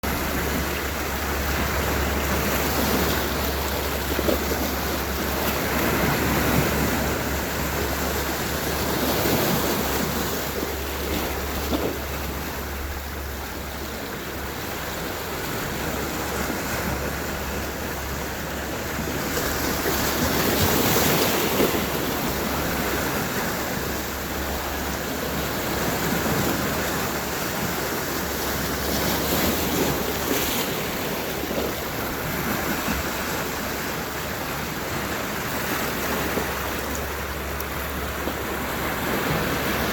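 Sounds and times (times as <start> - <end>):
sea waves washing onto shore: 0.0 - 39.9.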